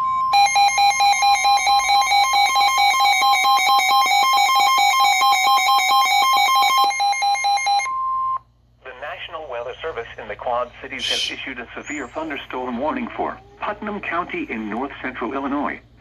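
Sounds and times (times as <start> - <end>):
steady alarm tone: 0.0 - 8.4.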